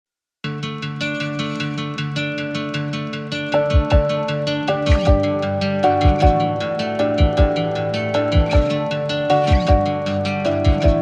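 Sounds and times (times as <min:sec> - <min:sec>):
plucked guitar notes: 0:00.4 - 0:11.0.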